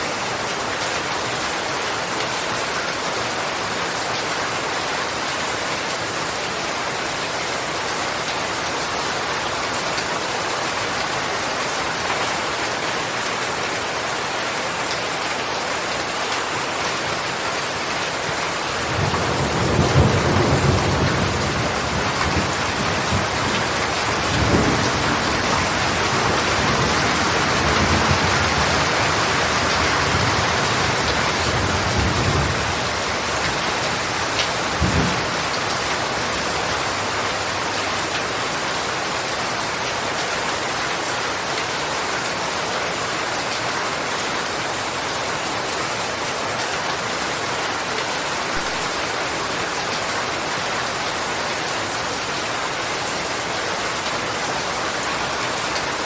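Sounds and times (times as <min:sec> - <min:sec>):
heavy rain: 0:00.0 - 0:56.0
rolling thunder: 0:34.7 - 0:35.6.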